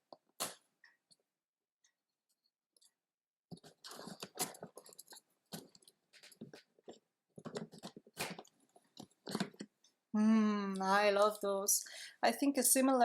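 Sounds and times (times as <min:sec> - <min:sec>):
plastic and cardboard crinkling: 0:03.5 - 0:09.8.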